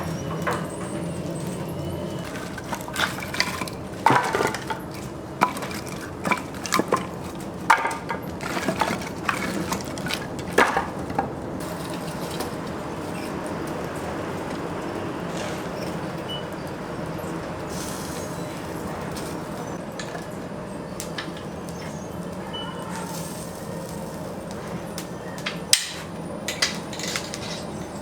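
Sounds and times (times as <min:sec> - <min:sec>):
kitchen utensils knocking and clinking: 0:00.0 - 0:12.6, 0:25.5 - 0:28.0
steady background hum: 0:00.0 - 0:28.0.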